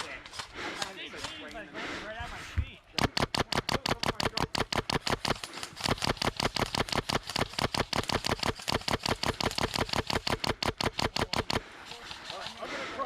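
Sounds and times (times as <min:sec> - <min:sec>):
airsoft gun firing full-auto: 0:03.0 - 0:11.7.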